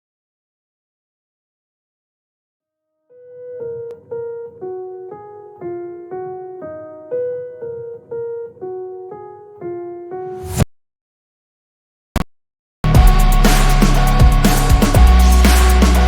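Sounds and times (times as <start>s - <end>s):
electric piano melody: 3.1s - 10.4s.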